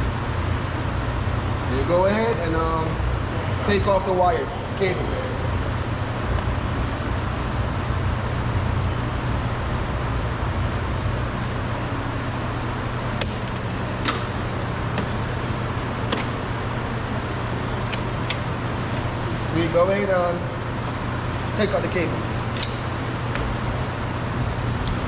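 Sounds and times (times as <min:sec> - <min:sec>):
steady background hum: 0:00.0 - 0:25.0.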